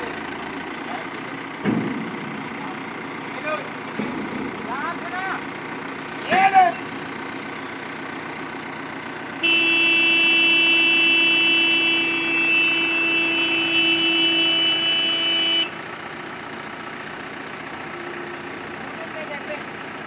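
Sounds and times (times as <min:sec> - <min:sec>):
vehicle engine idling: 0:00.0 - 0:20.0
truck horn blast: 0:09.3 - 0:15.9.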